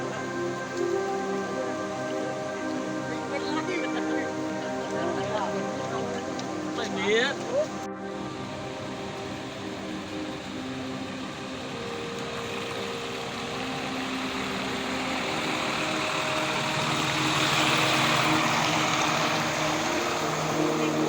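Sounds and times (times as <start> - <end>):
rushing flood water: 0.0 - 21.0
low motor-like hum: 7.8 - 21.0.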